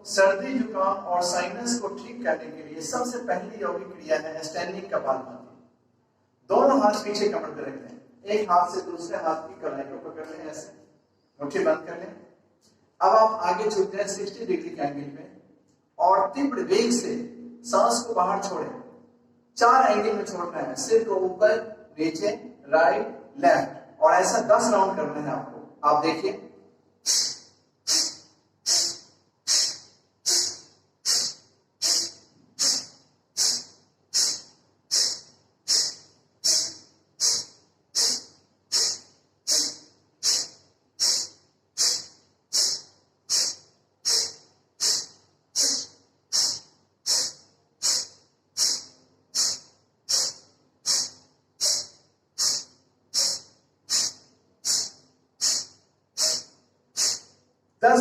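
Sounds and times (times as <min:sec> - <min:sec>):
sharp exhalations through nose: 0:27.0 - 0:57.4.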